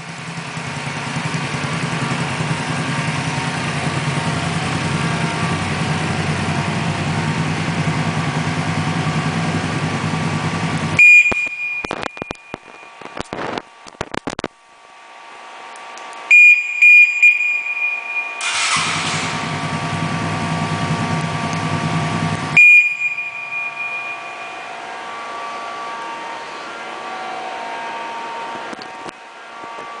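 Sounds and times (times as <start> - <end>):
scooter engine starting and running: 0.0 - 13.6, 16.4 - 24.9
alarm high beeps: 11.0 - 13.0, 16.3 - 18.4, 22.6 - 24.8.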